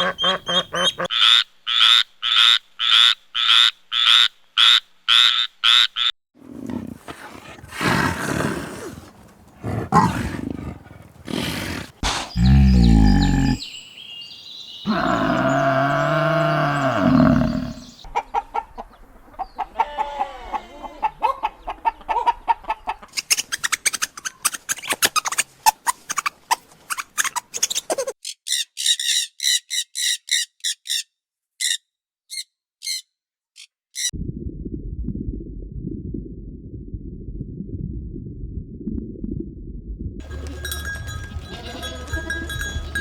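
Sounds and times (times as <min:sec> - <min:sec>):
bird clucks and chirps: 0:00.0 - 0:01.1, 0:18.0 - 0:23.7.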